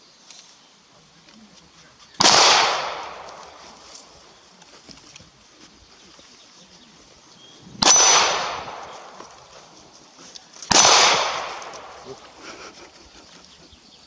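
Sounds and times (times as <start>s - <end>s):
gunshot with echo: 2.2s - 3.9s, 7.7s - 9.7s, 10.7s - 12.4s.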